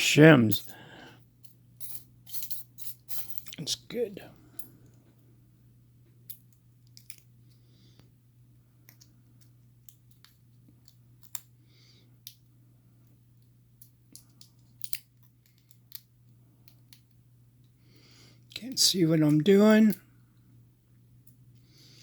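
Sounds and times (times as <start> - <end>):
steady low hum: 0.0 - 14.8
small metal clicks and taps: 8.8 - 11.5, 13.8 - 17.2.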